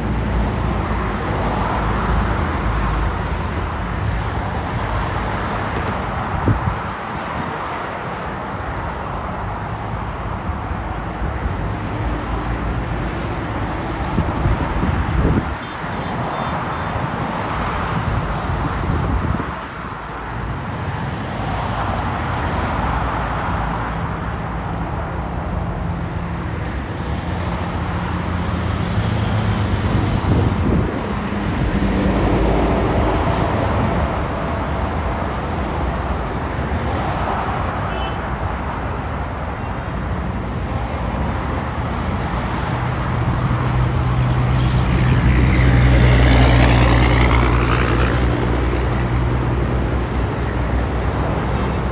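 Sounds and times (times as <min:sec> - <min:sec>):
cars passing: 0:00.0 - 0:51.9
heavy vehicle engine drone: 0:20.3 - 0:51.9.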